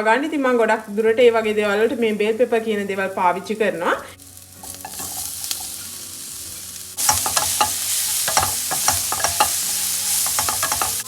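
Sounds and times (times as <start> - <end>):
vegetables sizzling in a pan: 0.1 - 11.0
utensil scraping a pan: 4.6 - 11.0.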